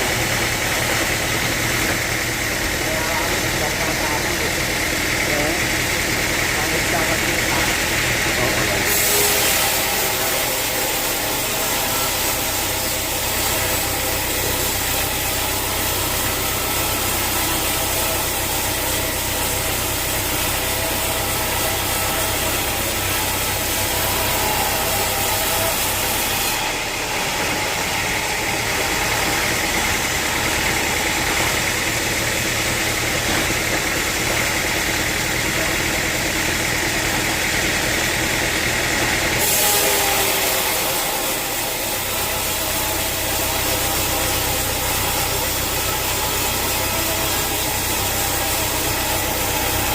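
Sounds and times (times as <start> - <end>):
sawmill machinery running: 0.0 - 49.9.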